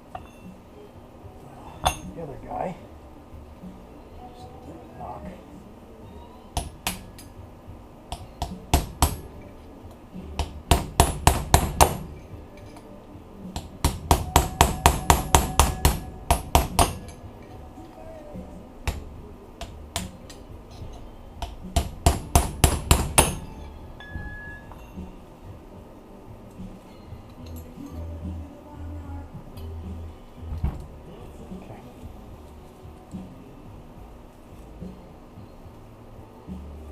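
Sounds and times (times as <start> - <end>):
hammer tapping metal: 1.8 - 2.2, 6.6 - 7.3, 8.1 - 9.5, 10.4 - 12.9, 13.5 - 17.3, 18.8 - 25.3.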